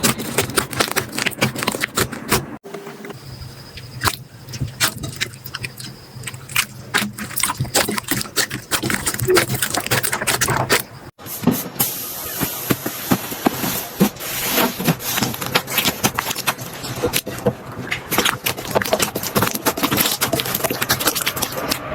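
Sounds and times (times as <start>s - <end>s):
hiss: 11.2s - 14.6s.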